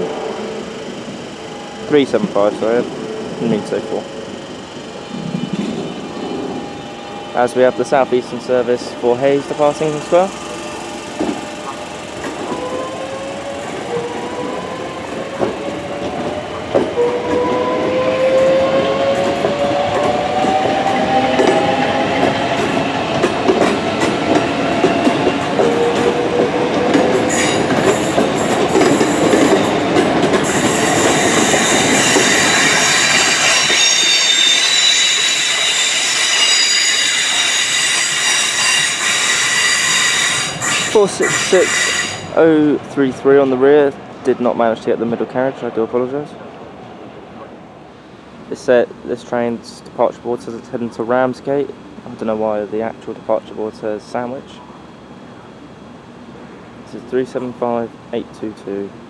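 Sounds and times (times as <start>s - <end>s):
wheels squealing: 0.0s - 42.5s
electric train motors whining: 0.0s - 42.7s
wheels clicking over rail joints: 7.7s - 18.0s, 18.8s - 33.8s.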